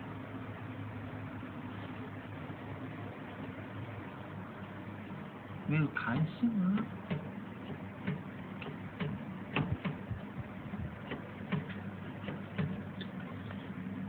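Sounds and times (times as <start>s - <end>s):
low machine hum: 0.0s - 14.0s
printer ticking clicks: 6.2s - 10.3s, 11.0s - 13.3s.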